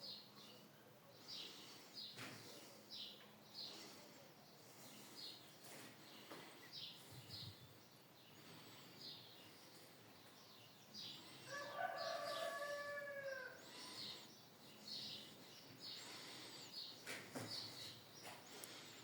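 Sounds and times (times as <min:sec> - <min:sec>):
small birds chirping: 0:00.0 - 0:19.0
rooster crowing: 0:11.5 - 0:13.7.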